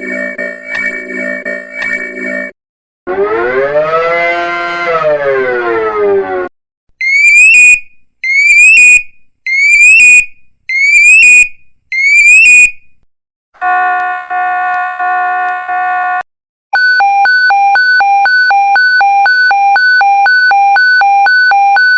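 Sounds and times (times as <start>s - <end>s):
rising whoop alarm tones: 3.1s - 6.5s
fast pulsing beep alarm: 7.0s - 12.7s, 16.8s - 21.9s.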